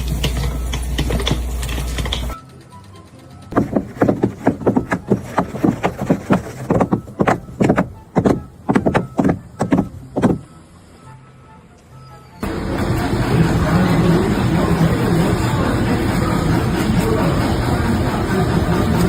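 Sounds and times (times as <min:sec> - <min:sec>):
fast sharp knocks: 0:03.6 - 0:10.4.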